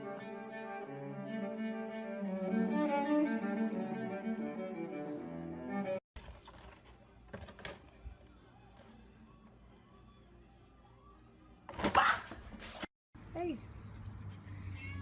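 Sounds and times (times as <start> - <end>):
cello playing held notes: 0.0 - 6.0.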